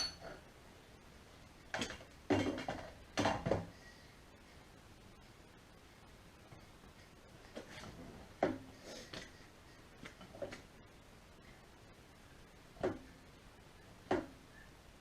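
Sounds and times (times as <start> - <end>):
tools knocking and clinking: 0.0 - 0.4.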